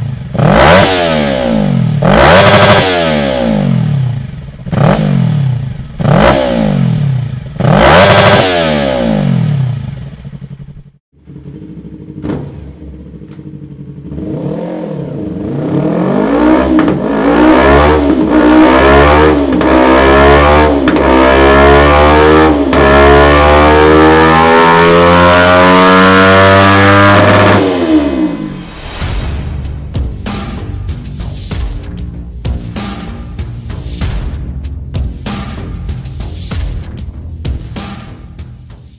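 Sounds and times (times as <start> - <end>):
motorcycle engine revving: 0.0 - 29.0.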